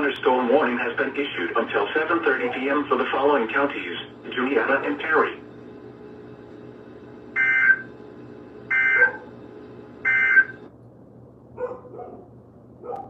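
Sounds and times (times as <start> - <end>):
digital data tone bursts: 7.4 - 7.9, 8.7 - 9.2, 10.0 - 10.6
dog barking: 9.0 - 9.3, 11.6 - 13.0.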